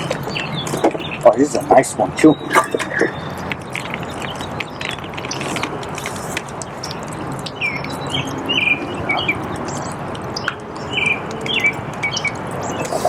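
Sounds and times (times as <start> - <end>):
sharp clicks: 0.0 - 13.0
songbird chirping: 0.0 - 13.0
steady rushing noise: 0.0 - 13.0.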